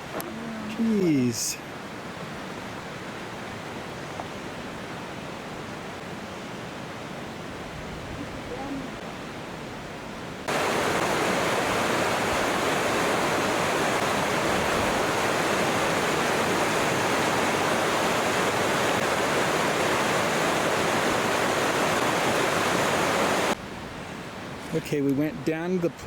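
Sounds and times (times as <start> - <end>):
waterfall rushing: 0.0 - 6.8, 10.4 - 23.6.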